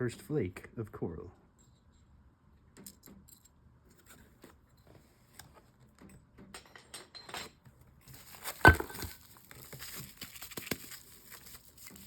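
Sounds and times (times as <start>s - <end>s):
packing material crinkling: 8.1s - 12.0s
stone slabs clinking: 8.2s - 9.3s.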